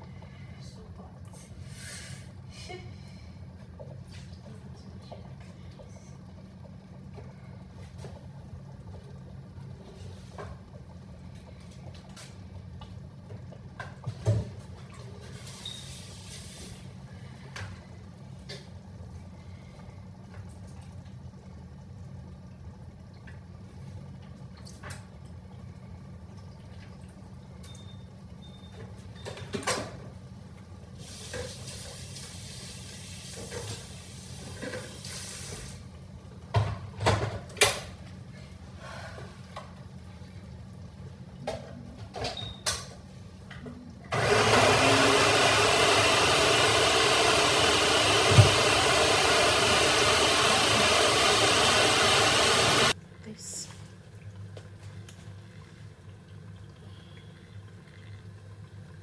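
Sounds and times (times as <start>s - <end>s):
hissing: 44.2s - 53.0s.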